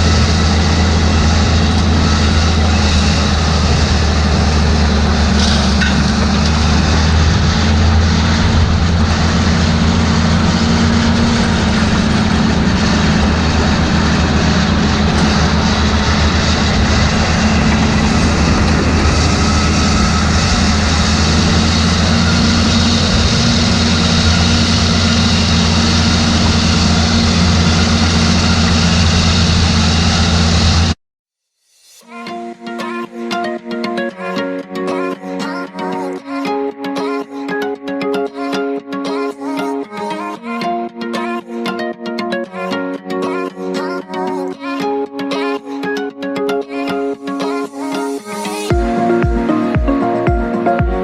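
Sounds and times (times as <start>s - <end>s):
tractor diesel engine running: 0.0s - 31.0s.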